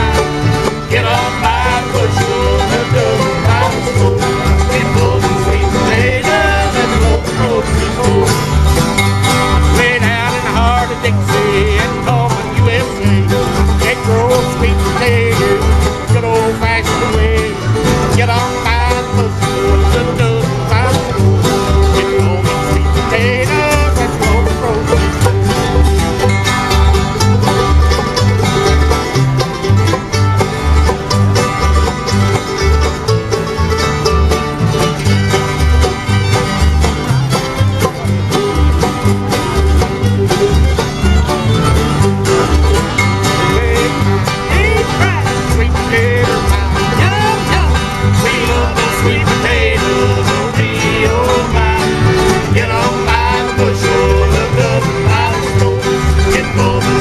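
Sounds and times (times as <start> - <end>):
banjo: 0.0 - 57.0
bass line: 0.0 - 57.0
guitar: 0.0 - 57.0
fiddle slides: 19.4 - 57.0.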